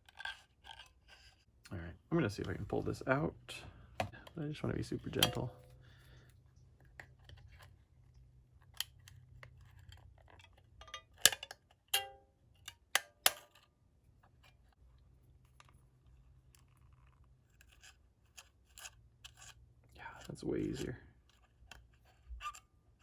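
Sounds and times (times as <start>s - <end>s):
metal tool clicking on plastic: 5.0s - 5.9s, 8.6s - 14.7s
ringing metallic clink: 10.8s - 12.2s.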